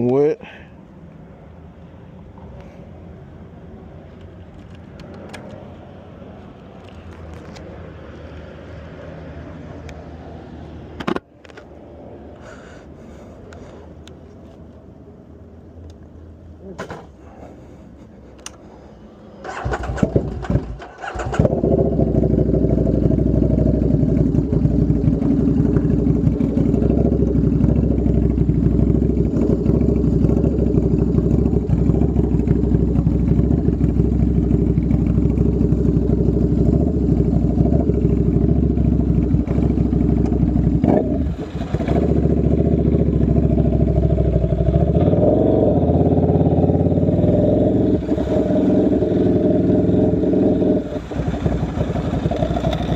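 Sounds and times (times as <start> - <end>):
motorcycle engine idling loudly: 21.4 - 45.3, 48.8 - 52.9.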